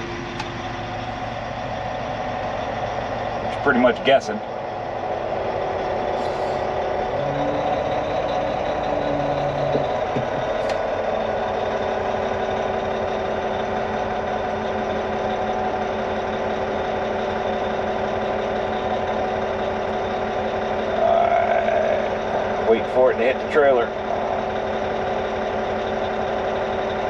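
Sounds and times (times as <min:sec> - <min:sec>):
dump truck diesel engine: 0:00.0 - 0:27.0.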